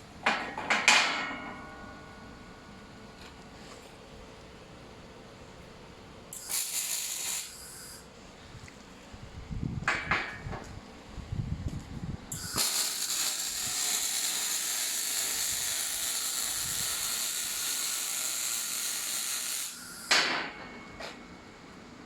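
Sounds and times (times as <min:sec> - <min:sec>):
welding arc crackling hiss: 0:06.3 - 0:08.1, 0:12.3 - 0:20.4.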